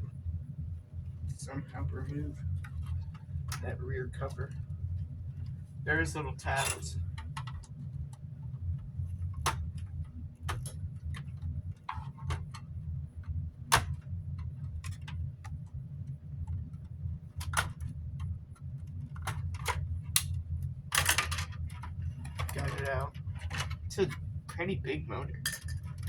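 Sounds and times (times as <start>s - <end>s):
steady low hum: 0.0s - 26.0s
plastic parts clicking and tapping: 9.3s - 15.7s, 16.5s - 24.6s.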